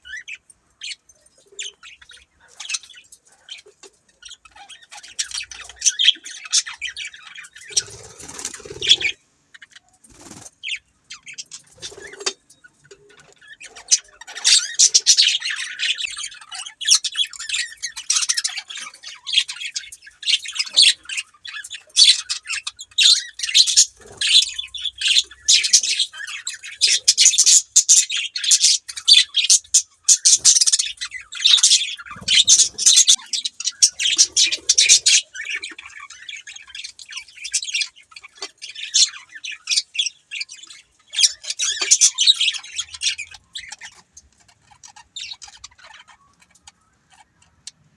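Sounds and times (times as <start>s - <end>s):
budgerigars chirping: 0.0s - 47.9s
budgerigar squawks: 22.0s - 36.5s.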